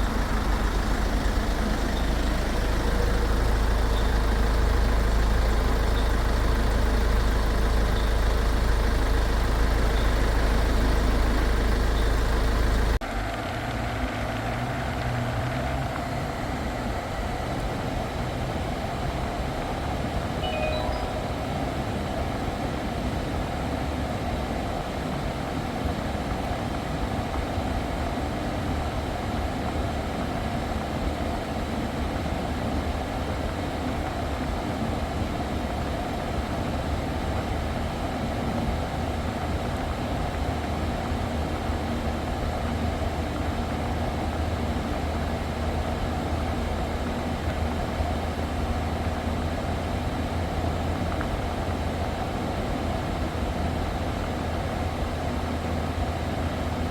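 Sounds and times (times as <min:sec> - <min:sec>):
air conditioning running: 0:00.0 - 0:13.0
car engine idling: 0:00.0 - 0:13.0.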